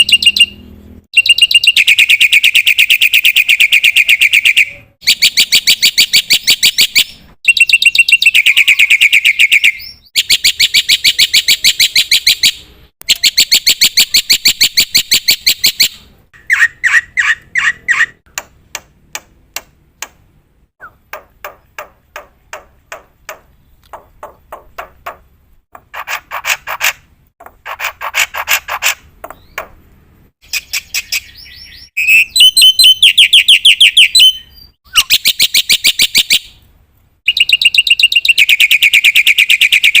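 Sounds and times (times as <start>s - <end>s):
bird singing rattling notes: 0.0s - 18.3s, 27.8s - 29.8s, 30.4s - 36.5s, 37.3s - 40.0s.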